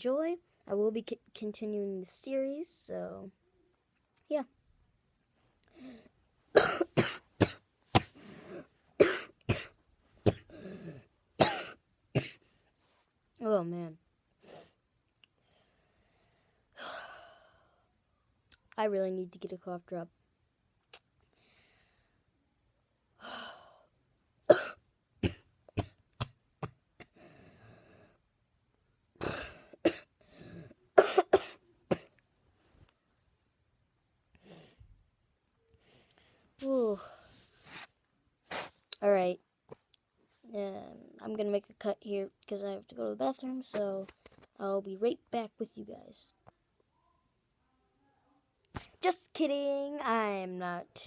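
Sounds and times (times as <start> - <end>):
person coughing: 6.6 - 12.4, 24.5 - 26.0, 29.2 - 30.1, 31.0 - 32.1.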